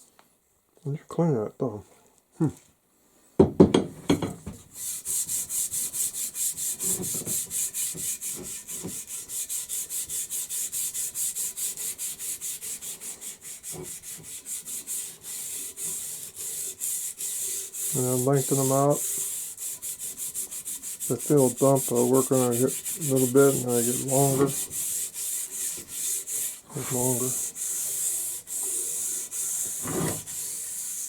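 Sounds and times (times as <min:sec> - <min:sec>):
handling knock: 0:03.4 - 0:04.6
sandpaper rubbing on wood: 0:04.7 - 0:31.0.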